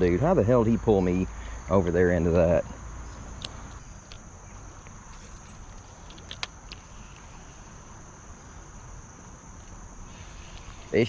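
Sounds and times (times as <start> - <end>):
insects droning: 0.0 - 11.0
low outdoor hiss: 0.0 - 11.0
sharp clicks: 3.1 - 4.2, 4.8 - 7.5.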